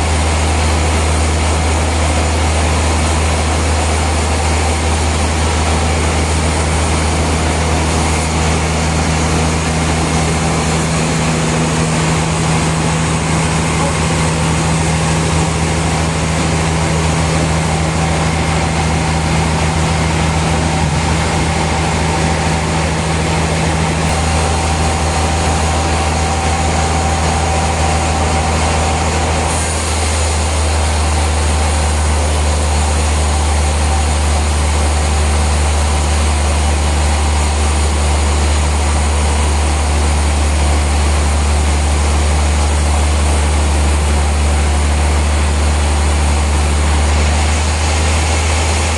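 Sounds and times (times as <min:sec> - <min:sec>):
sawmill machinery humming: 0:00.0 - 0:48.9.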